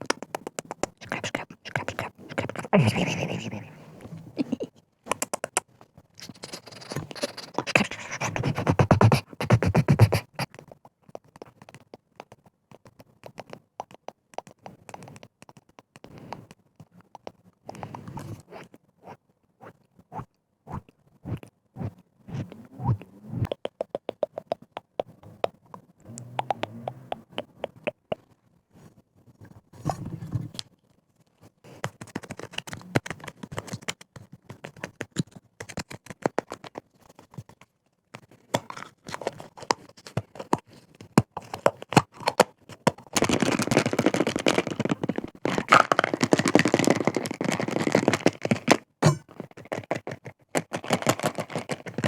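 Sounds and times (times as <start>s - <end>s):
scratching on objects: 6.2s - 13.6s, 31.7s - 52.0s.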